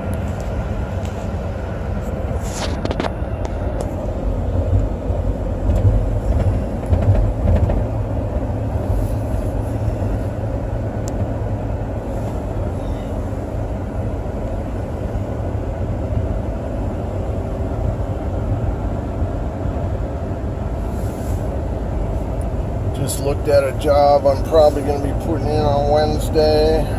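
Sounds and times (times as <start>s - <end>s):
vehicle rumble from inside cab: 0.0s - 26.9s.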